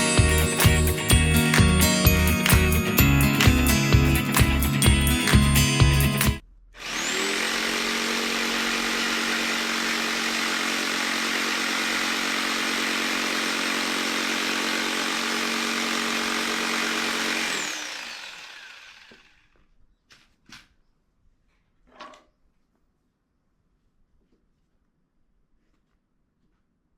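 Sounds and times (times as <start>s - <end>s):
power tool motor whirring: 6.8s - 19.6s.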